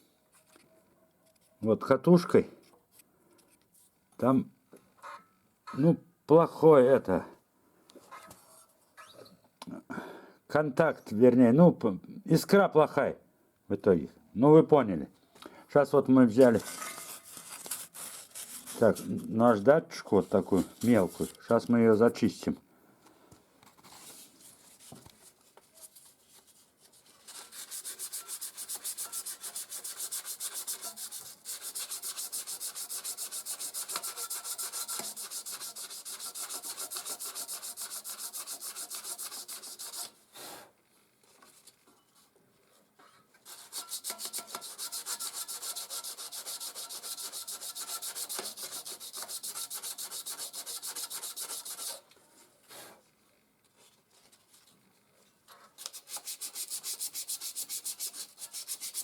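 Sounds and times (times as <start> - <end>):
sandpaper scrubbing metal: 16.5 - 19.1, 27.1 - 40.2, 43.4 - 52.0, 55.8 - 59.0.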